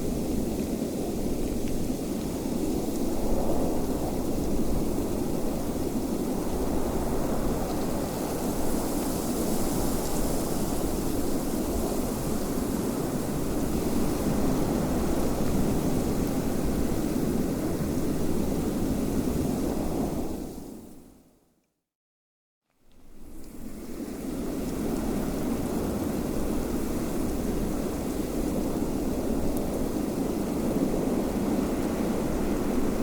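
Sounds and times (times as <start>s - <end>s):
rushing wind: 0.0s - 20.9s, 23.2s - 33.0s.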